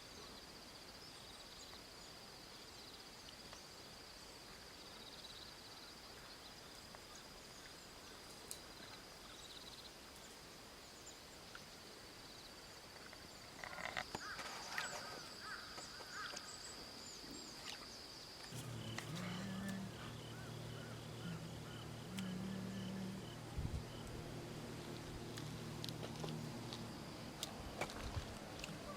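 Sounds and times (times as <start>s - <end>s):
insect trill: 12.2s - 28.9s
bird calls: 18.5s - 28.9s
low drone: 18.5s - 28.9s.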